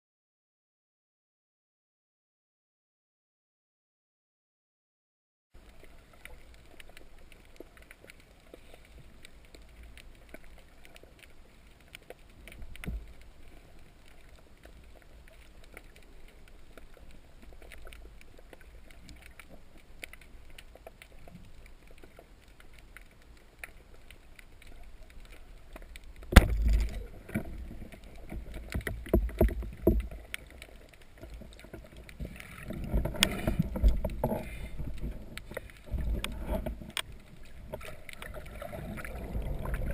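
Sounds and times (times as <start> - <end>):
small clicks underwater: 5.6 - 39.9
moving water wash: 24.6 - 39.9
water splashes and knocks: 24.7 - 39.9.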